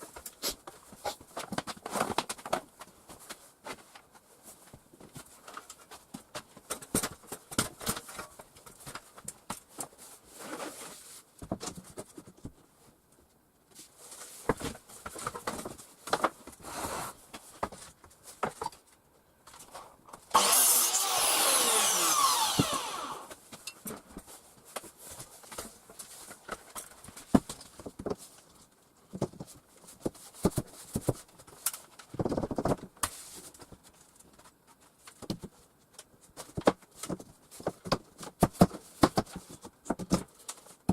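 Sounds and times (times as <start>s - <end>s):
power saw cutting: 20.3s - 23.4s.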